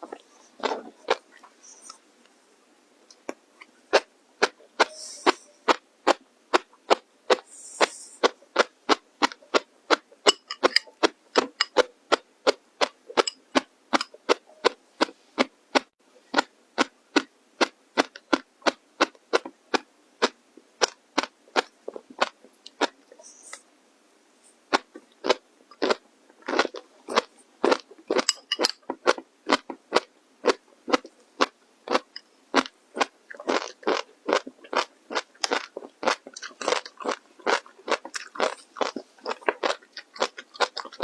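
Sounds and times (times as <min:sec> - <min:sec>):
crunchy food being chewed: 0:00.0 - 0:02.0, 0:03.1 - 0:23.6, 0:24.7 - 0:41.0.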